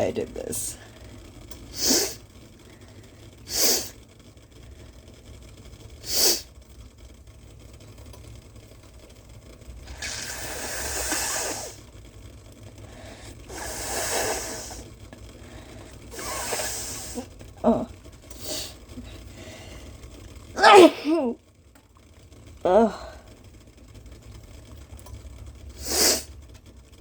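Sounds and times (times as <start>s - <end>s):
person blowing nose: 1.7s - 2.2s, 3.5s - 3.9s, 6.0s - 6.5s, 9.9s - 11.8s, 13.5s - 14.8s, 16.1s - 17.2s, 25.8s - 26.3s
person sniffing through nose: 1.7s - 2.2s, 3.5s - 4.0s, 6.0s - 6.5s, 9.9s - 11.8s, 13.5s - 14.8s, 16.1s - 17.3s, 25.8s - 26.3s.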